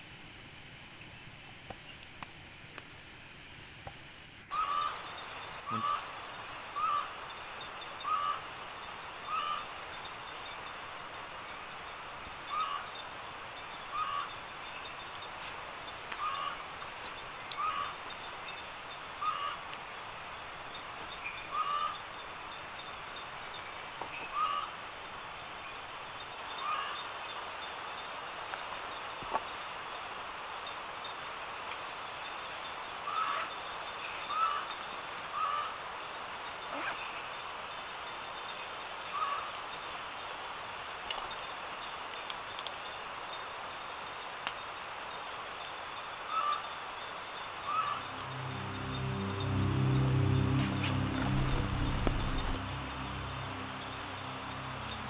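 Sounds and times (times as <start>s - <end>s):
steady night-time hiss: 0.0s - 55.0s
night bird calling: 4.5s - 27.9s, 32.7s - 37.5s, 39.0s - 39.9s, 45.1s - 55.0s.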